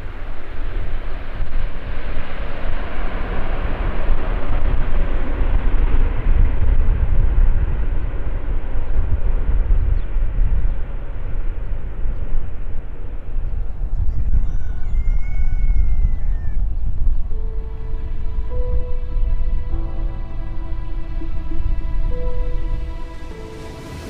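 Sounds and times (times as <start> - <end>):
turboprop aircraft engines rumbling: 0.0 - 15.0.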